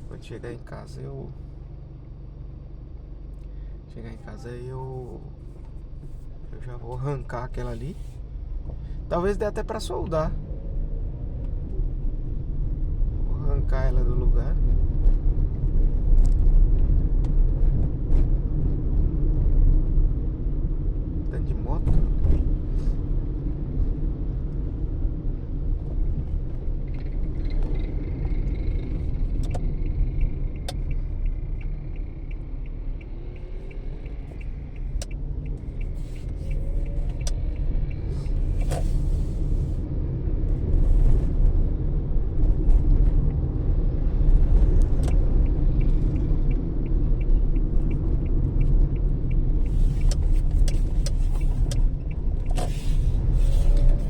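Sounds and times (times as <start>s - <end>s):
car engine rumble from cabin: 0.0s - 54.0s
light regular ticking: 26.8s - 39.6s, 44.8s - 54.0s.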